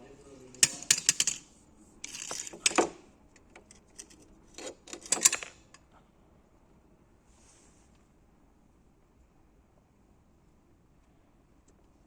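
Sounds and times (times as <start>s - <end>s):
metal tools clinking: 0.6s - 3.0s, 3.7s - 5.8s.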